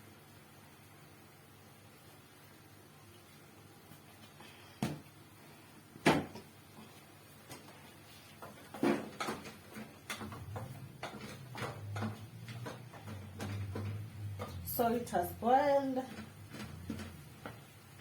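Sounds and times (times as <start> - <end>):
containers and utensils clattering: 8.4 - 17.4.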